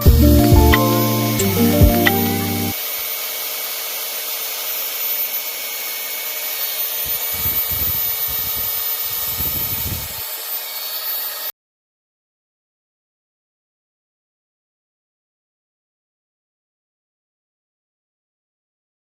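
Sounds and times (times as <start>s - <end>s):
handheld power tool running: 2.7s - 11.5s.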